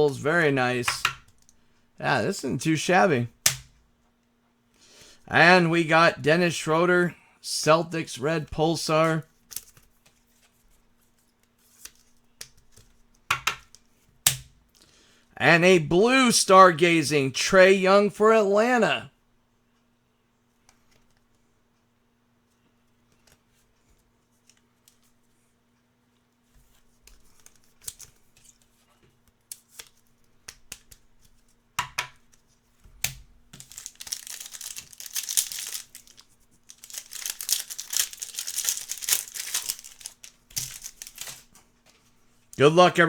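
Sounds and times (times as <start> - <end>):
foil wrapper tearing and crinkling: 33.6 - 41.5.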